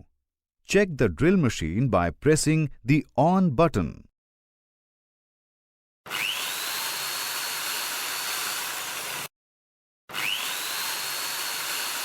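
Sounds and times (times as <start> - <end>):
electric drill motor whining: 6.1 - 9.3, 10.1 - 12.0.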